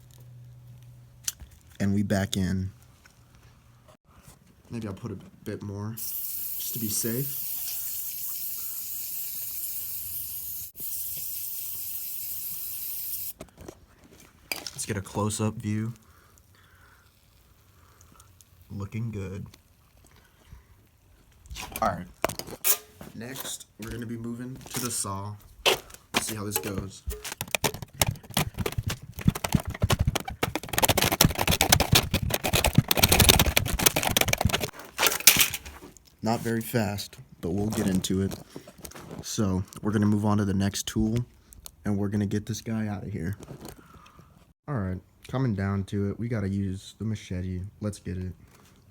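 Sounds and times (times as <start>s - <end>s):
aerosol spray can hissing: 6.0s - 13.4s.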